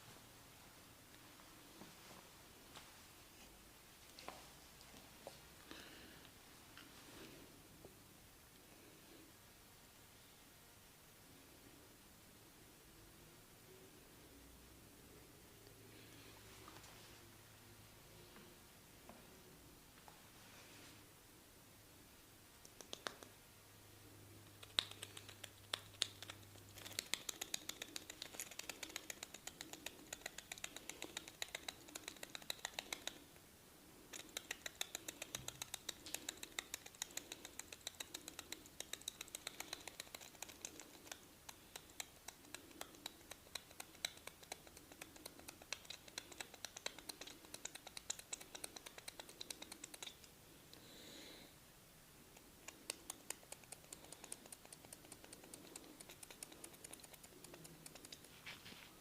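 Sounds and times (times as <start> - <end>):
hands clicking on hair and head: 22.6 - 23.4, 24.4 - 33.3, 34.0 - 50.4, 52.3 - 59.0.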